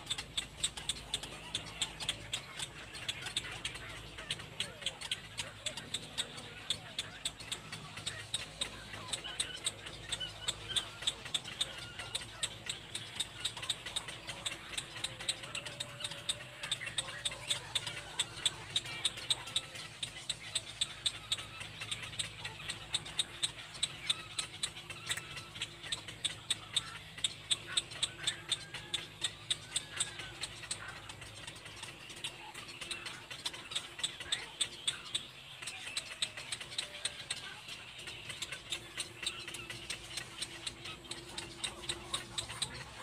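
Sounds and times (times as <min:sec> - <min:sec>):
rapid even ticking: 0:00.0 - 0:43.0.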